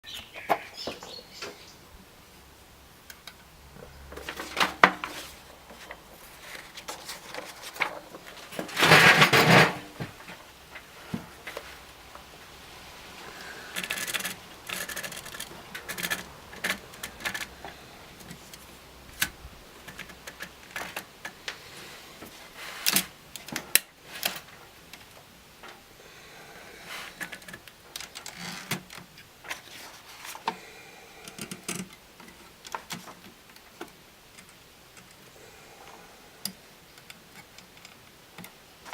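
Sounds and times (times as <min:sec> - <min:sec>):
typewriter keys clacking: 0:13.7 - 0:17.5.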